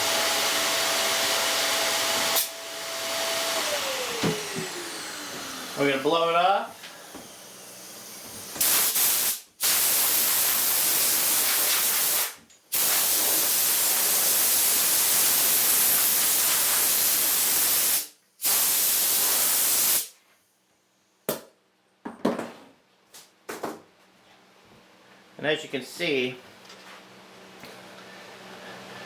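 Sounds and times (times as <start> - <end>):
compressed air hissing: 6.8 - 20.2.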